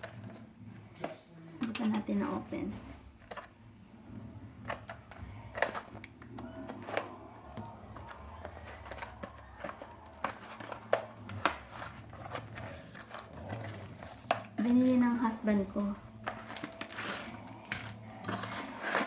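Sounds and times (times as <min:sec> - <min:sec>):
handling noise: 0:00.0 - 0:19.0
packaging clicks and taps: 0:04.6 - 0:15.1, 0:15.8 - 0:19.0.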